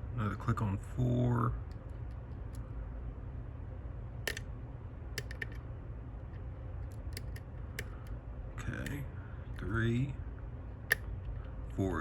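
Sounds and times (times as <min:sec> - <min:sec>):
steady low hum: 0:00.0 - 0:12.0
lock pick clicks: 0:04.3 - 0:04.5, 0:05.2 - 0:05.6, 0:06.8 - 0:08.2.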